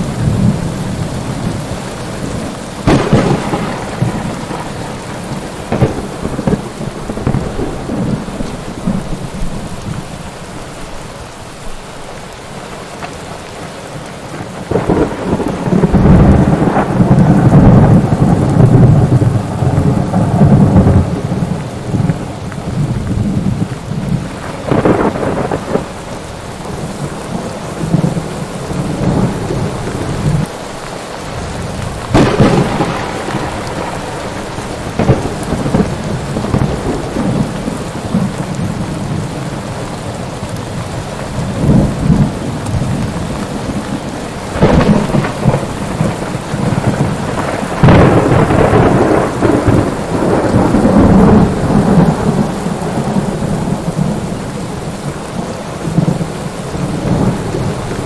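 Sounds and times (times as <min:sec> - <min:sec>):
heavy rain: 0:00.0 - 0:58.0
thunder: 0:02.3 - 0:10.0, 0:14.3 - 0:26.0, 0:31.4 - 0:39.2, 0:41.4 - 0:54.4.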